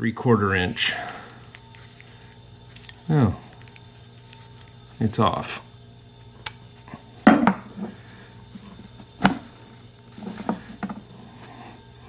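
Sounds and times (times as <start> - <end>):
faucet valve parts knocking: 7.3 - 7.8.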